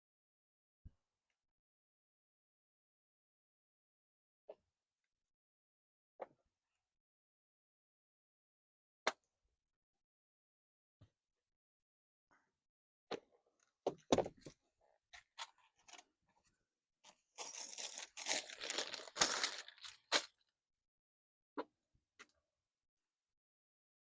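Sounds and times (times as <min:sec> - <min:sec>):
crackly rustling and crunching: 0:17.0 - 0:20.4.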